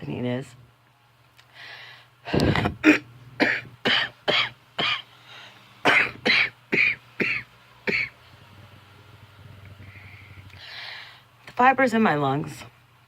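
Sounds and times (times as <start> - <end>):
person coughing: 2.6 - 5.1, 5.8 - 8.2.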